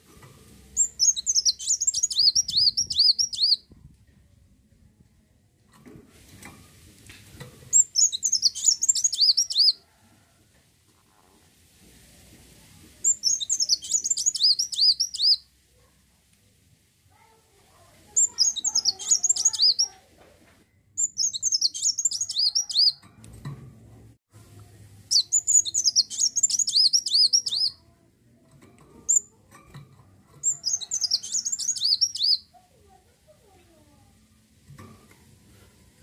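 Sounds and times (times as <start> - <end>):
sunbird twittering song: 0.8 - 3.6, 7.7 - 9.8, 13.0 - 15.4, 18.2 - 19.9, 21.0 - 23.0, 25.1 - 27.8, 30.4 - 32.4.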